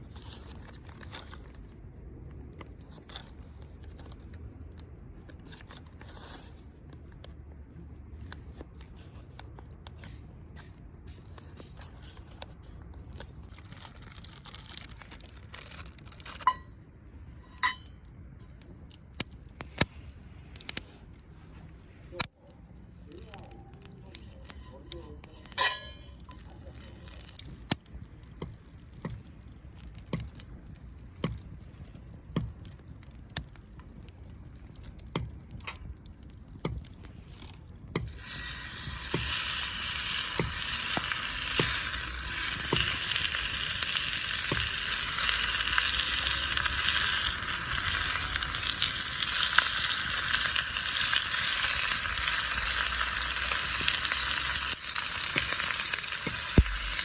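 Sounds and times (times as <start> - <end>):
food sizzling in hot oil: 38.0 - 57.0.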